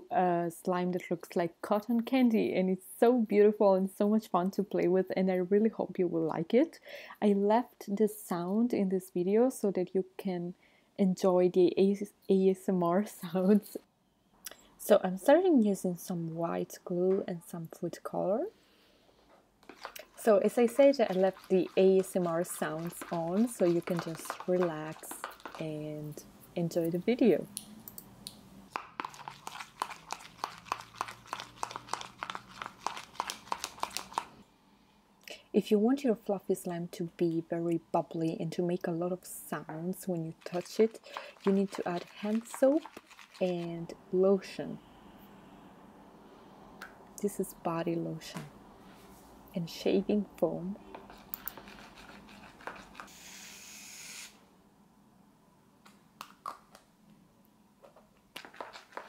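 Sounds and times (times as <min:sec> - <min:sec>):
glue stirred with sticky clicks: 0:19.6 - 0:25.7, 0:28.7 - 0:34.3
aerosol can spraying: 0:51.6 - 0:54.4.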